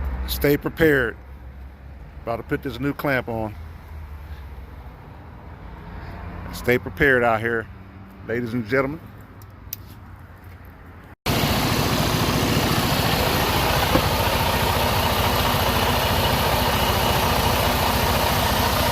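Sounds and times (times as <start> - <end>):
vehicle engine idling: 11.3 - 18.9.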